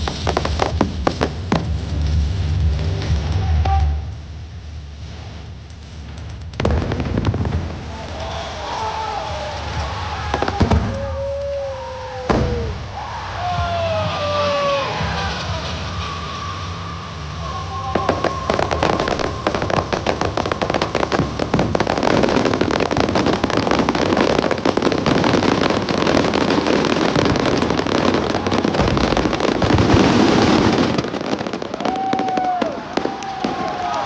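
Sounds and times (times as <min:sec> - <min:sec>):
fireworks cracking and popping: 0:00.0 - 0:34.0.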